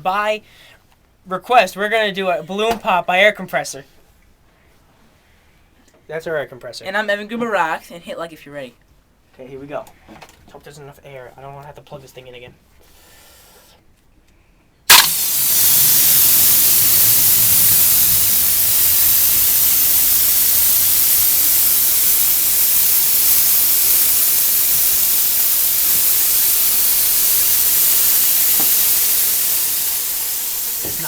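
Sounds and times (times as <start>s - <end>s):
compressed air hissing: 14.9s - 31.0s.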